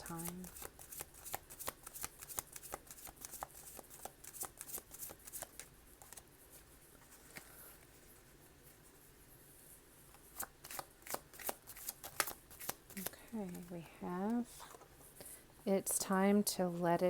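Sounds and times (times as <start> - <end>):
cards being shuffled: 0.0 - 6.3, 7.0 - 8.0, 10.1 - 15.0.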